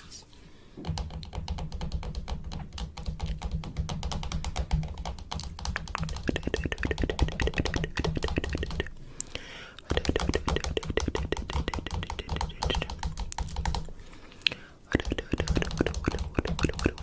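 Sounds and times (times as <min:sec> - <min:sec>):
rapid tapping clicks: 0:00.8 - 0:09.0, 0:09.8 - 0:13.9, 0:14.9 - 0:17.0
steady low hum: 0:04.3 - 0:17.0.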